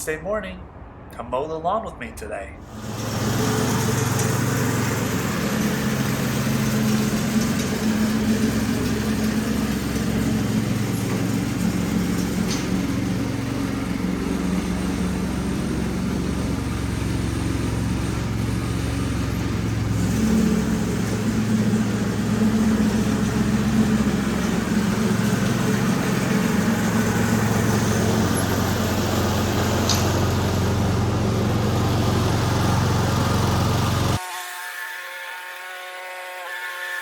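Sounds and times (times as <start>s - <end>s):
lawn mower engine running: 2.7s - 34.2s.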